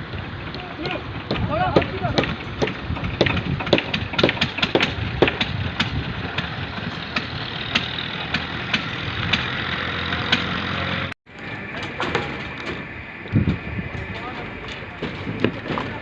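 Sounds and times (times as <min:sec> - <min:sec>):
engine running steadily: 0:00.0 - 0:16.0
sharp knocks: 0:00.8 - 0:09.5.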